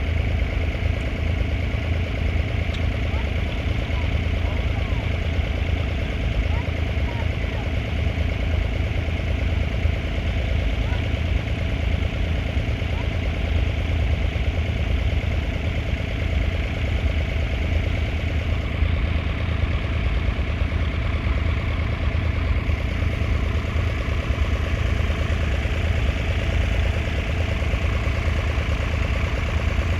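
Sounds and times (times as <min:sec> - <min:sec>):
tractor diesel engine running: 0:00.0 - 0:29.9.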